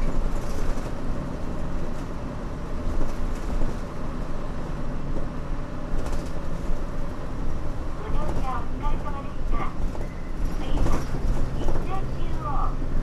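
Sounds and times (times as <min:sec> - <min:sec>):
bus diesel engine rumbling: 0:00.0 - 0:13.0.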